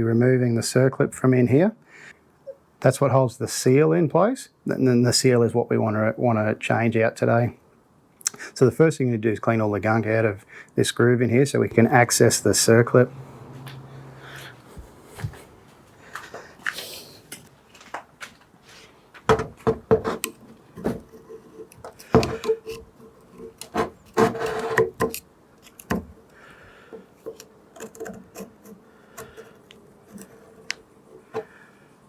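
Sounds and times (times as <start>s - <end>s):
screwdriver scraping metal groove: 19.9s - 25.9s, 27.3s - 30.7s.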